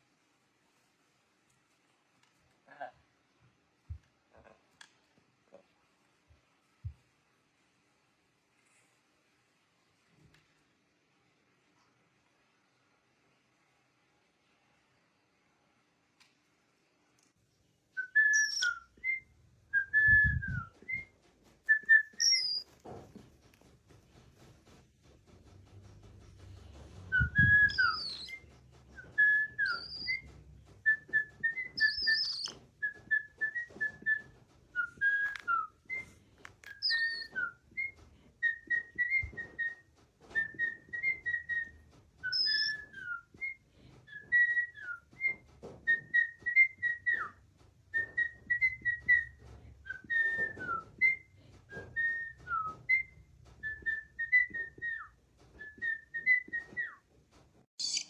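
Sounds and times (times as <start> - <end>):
short whistled notes: 18.0 - 21.1, 21.7 - 22.7, 27.0 - 39.8.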